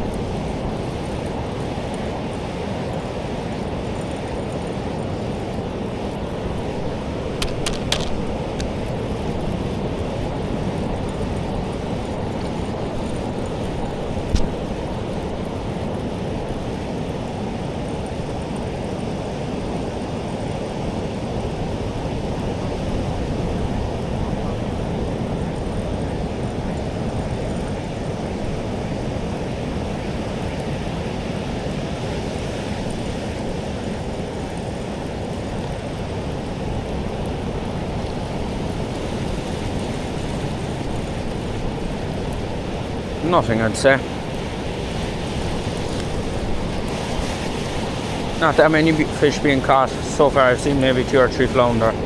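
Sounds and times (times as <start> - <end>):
wind: 0.0 - 52.0
breaking surf: 6.0 - 15.3, 38.2 - 52.0.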